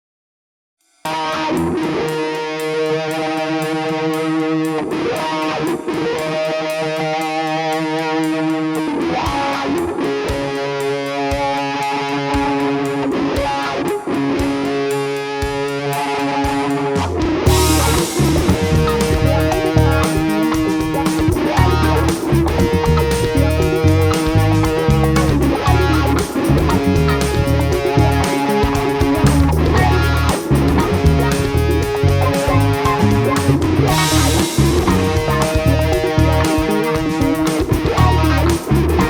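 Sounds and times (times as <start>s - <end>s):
electric guitar chords: 1.1s - 39.0s
fast high ticks: 1.1s - 39.0s
cymbals: 8.7s - 39.0s.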